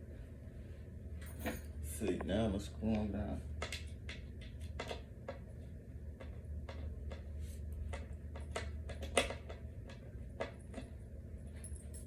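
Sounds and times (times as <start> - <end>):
low steady hum: 0.0 - 12.0.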